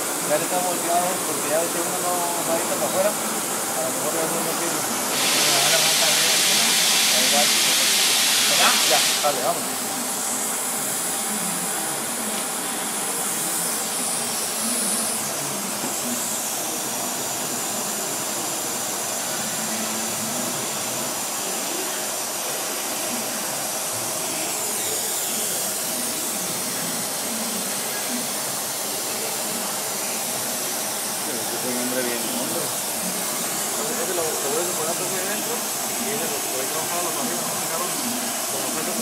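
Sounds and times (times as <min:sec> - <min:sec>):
hissing rush of air: 0:00.0 - 0:16.9.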